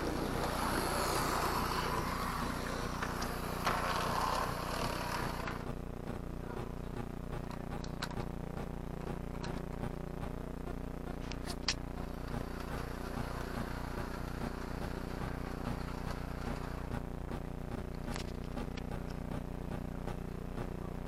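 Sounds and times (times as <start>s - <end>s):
model train motor hum: 0.0s - 6.2s, 11.9s - 20.4s
wheels clicking on track: 0.0s - 10.0s, 11.3s - 21.0s.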